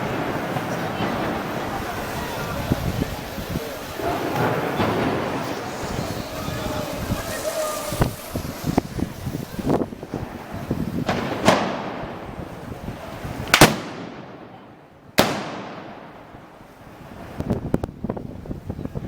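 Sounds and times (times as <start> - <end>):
sharp gunpowder bangs with echo: 13.6 - 14.4, 15.2 - 16.1.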